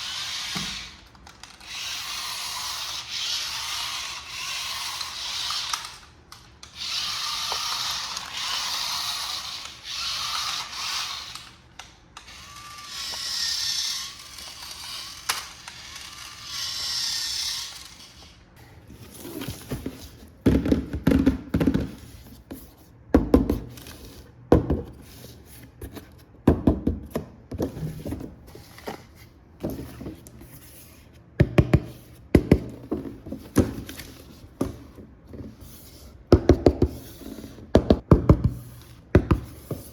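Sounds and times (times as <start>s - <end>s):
toy car electric motor whirring: 0.0s - 18.4s.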